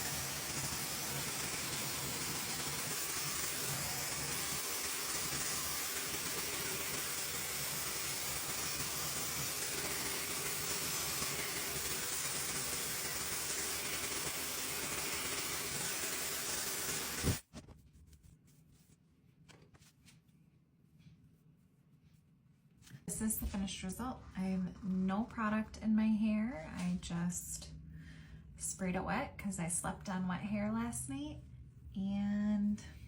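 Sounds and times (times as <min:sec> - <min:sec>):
hair dryer running: 0:00.0 - 0:17.4.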